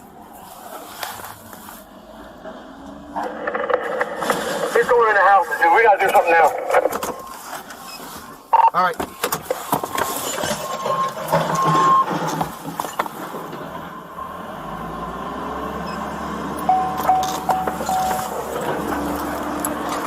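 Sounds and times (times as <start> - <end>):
clattering background noise: 0.0 - 14.0, 16.6 - 20.0
short electronic beeps: 6.2 - 8.9, 16.7 - 18.4
vehicle engine running: 11.2 - 20.0.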